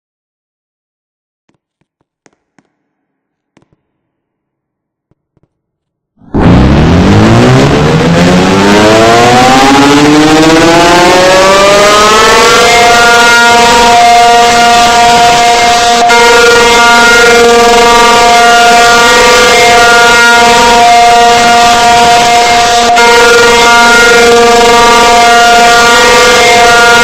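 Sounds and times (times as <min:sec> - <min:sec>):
siren winding up: 0:06.2 - 0:27.0.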